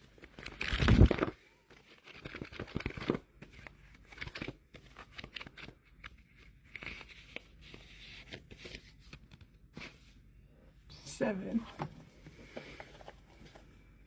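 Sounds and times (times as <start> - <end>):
paper rustling and crinkling: 0.0 - 10.1.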